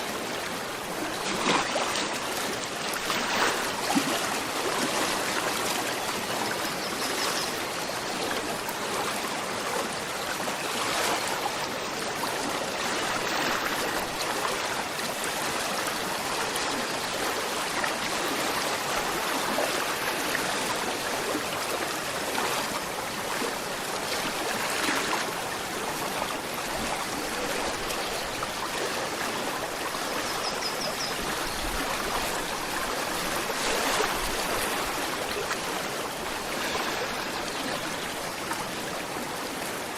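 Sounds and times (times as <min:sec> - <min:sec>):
river flowing: 0:00.0 - 0:39.9.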